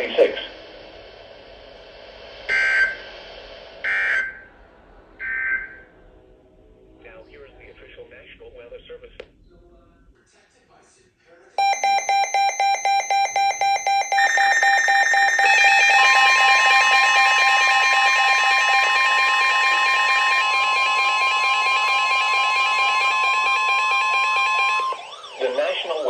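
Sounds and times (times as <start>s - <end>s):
rapid alarm beeping: 2.5s - 3.0s, 3.8s - 4.5s, 5.2s - 5.9s, 11.6s - 25.6s
continuous alarm: 2.5s - 3.1s, 3.8s - 6.2s, 11.6s - 26.0s.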